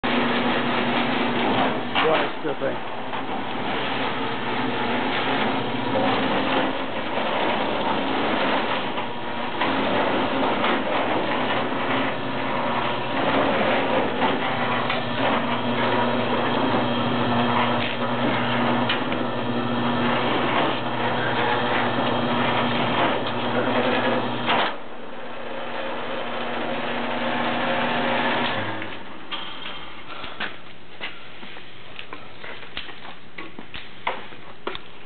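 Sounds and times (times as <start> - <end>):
wire stripping machine motor humming: 0.0 - 29.4
crackle and clatter: 0.3 - 2.3, 2.9 - 19.4, 20.0 - 24.8.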